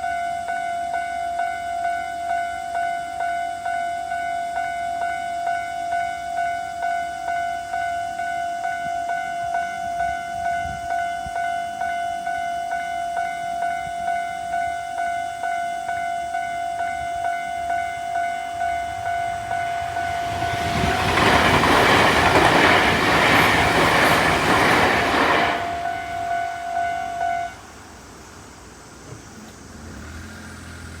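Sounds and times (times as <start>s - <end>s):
level crossing bell ringing: 9.2s - 27.7s
train rumbling and clattering: 17.0s - 29.3s.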